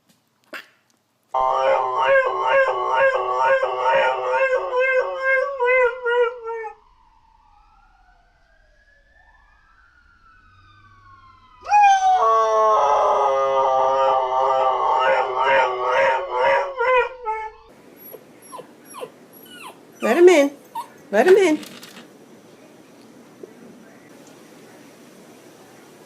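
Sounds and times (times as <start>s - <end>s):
dog howling: 1.4s - 6.9s, 11.6s - 21.2s.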